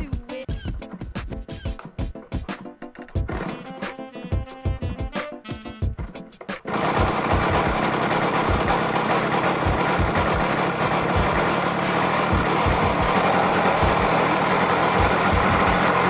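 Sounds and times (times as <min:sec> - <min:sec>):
music: 0:00.0 - 0:16.0
model airplane engine running: 0:03.3 - 0:03.7, 0:06.7 - 0:16.0.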